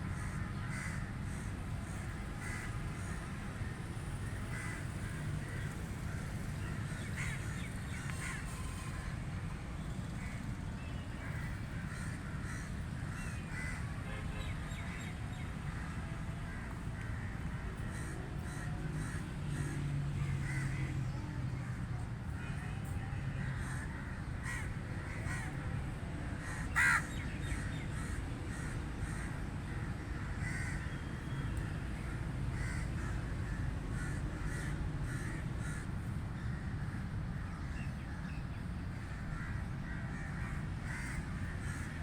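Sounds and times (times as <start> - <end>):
crows cawing: 0.1 - 3.3, 4.3 - 9.1, 11.2 - 13.9, 15.6 - 21.1, 23.4 - 25.6, 26.4 - 31.0, 32.0 - 38.1, 39.0 - 42.0.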